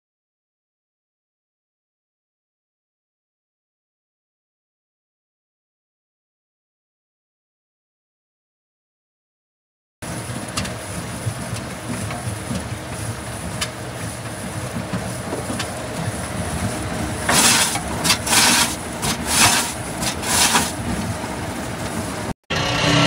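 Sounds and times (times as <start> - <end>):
tumble dryer rumbling: 10.0 - 23.0
clattering from dryer drum: 10.1 - 22.0
loud hissing rushes: 12.8 - 22.3.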